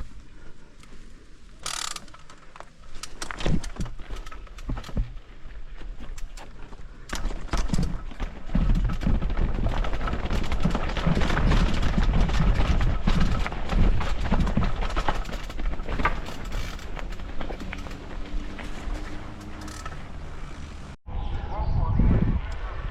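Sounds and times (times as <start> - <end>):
engine knocks and clatter: 6.0 - 21.0.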